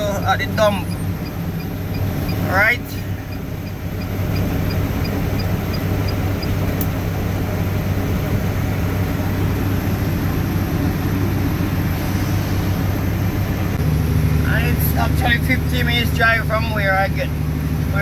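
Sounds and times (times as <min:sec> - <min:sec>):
faint regular ticking: 0:00.0 - 0:07.0
vehicle engine and road noise: 0:00.0 - 0:18.0.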